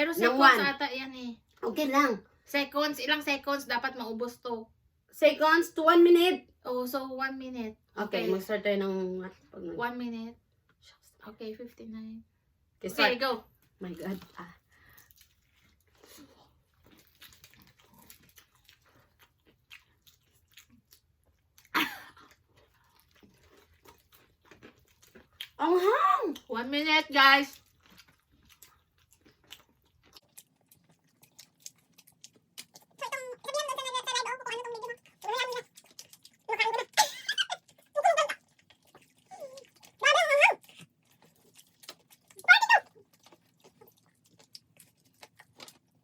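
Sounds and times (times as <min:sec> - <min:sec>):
chewing and crunching food: 0:13.0 - 0:46.0.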